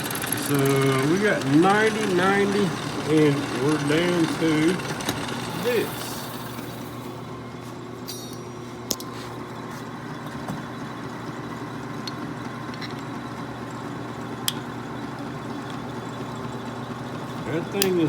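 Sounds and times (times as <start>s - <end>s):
high rattle: 0.0s - 7.2s
machine tool motor hum: 0.0s - 18.0s.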